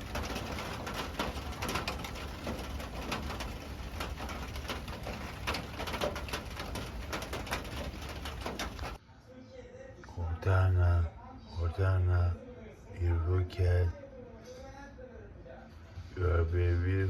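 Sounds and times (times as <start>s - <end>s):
heavy rain falling: 0.0s - 9.0s.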